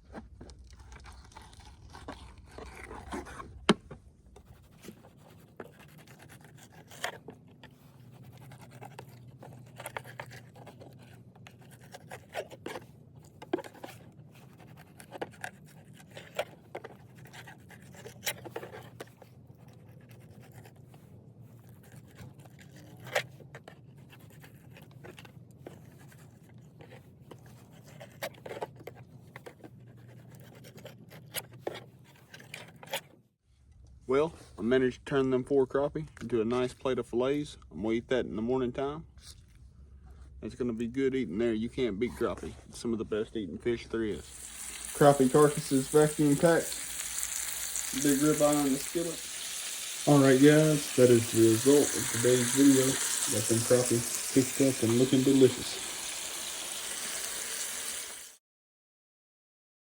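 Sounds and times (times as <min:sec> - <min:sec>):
knife scraping and cutting fish: 0:00.2 - 0:33.2, 0:44.2 - 0:56.2.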